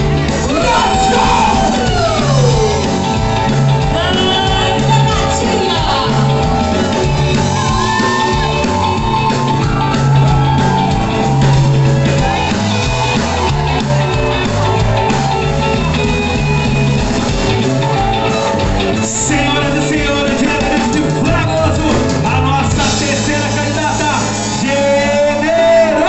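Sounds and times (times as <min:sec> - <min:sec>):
rock and roll song: 0:00.0 - 0:26.0
person shouting: 0:00.5 - 0:02.8
person singing: 0:03.8 - 0:06.7, 0:19.0 - 0:23.6.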